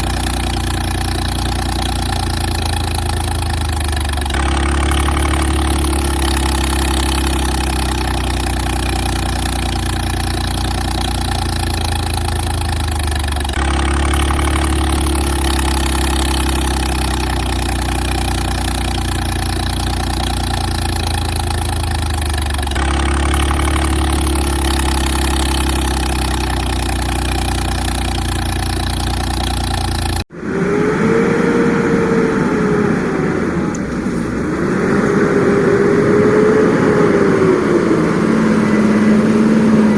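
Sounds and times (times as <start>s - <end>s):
engine idling: 0.0s - 39.9s
rising and falling tone: 30.3s - 39.9s.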